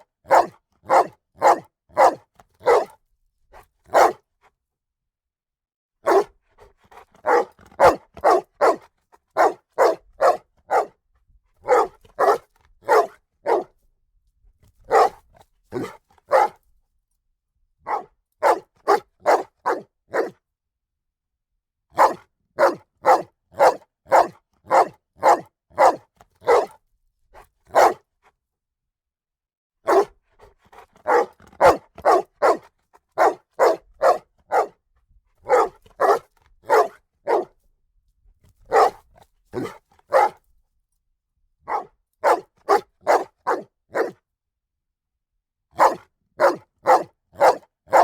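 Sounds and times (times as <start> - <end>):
dog barking sharply: 0.3 - 3.0, 3.9 - 4.2, 6.0 - 6.3, 6.9 - 11.0, 11.6 - 13.7, 14.9 - 16.6, 17.9 - 20.4, 22.0 - 26.8, 27.7 - 28.0, 29.8 - 34.8, 35.5 - 37.5, 38.7 - 39.0, 39.6 - 40.4, 41.7 - 44.2, 45.8 - 48.0.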